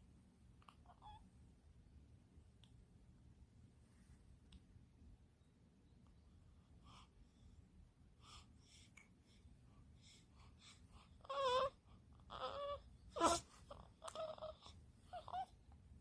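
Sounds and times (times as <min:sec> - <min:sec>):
newborn baby whimpering cries: 0:11.2 - 0:15.6.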